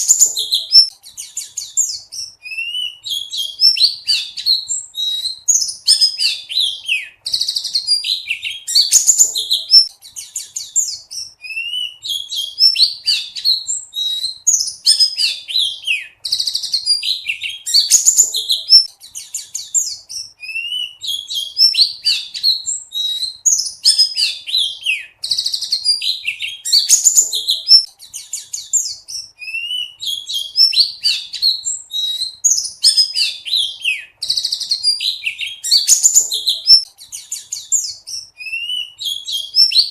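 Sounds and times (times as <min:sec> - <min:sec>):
bird singing chirps and trills: 0:00.0 - 0:39.9.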